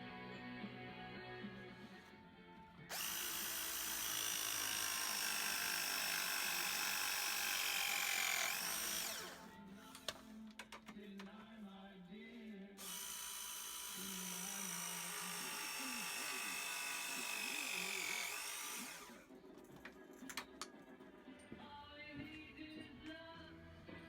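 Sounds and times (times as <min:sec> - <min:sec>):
power drill running: 0:02.9 - 0:10.1, 0:12.8 - 0:19.3.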